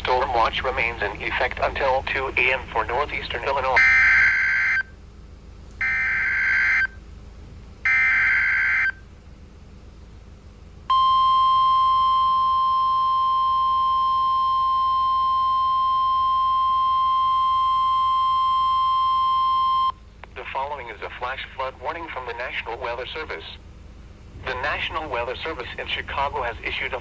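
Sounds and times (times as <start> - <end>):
warning alarm tone: 2.5 - 5.0, 5.8 - 7.0, 7.8 - 9.1, 10.9 - 20.0, 24.3 - 27.0.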